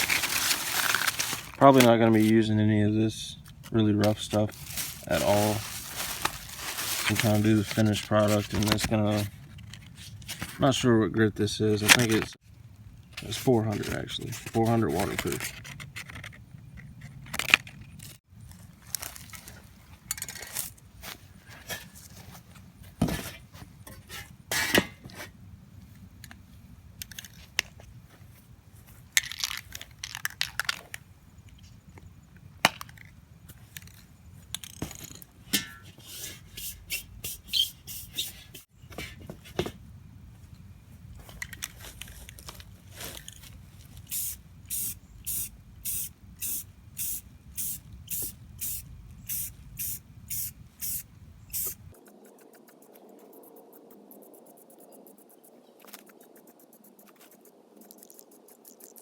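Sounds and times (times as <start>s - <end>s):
spray paint can hissing: 44.1s - 55.4s.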